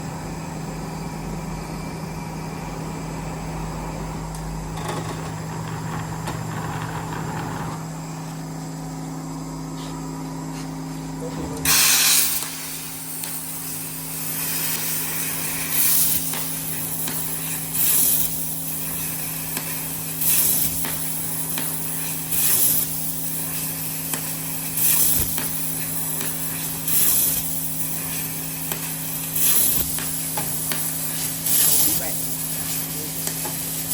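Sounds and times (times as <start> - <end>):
machine humming: 0.0 - 11.6
bursts of loud hissing: 11.7 - 13.6.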